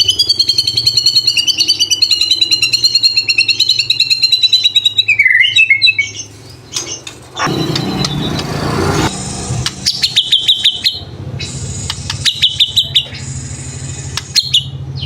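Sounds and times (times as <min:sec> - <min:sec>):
bird singing high repeated notes: 0:07.4 - 0:14.7.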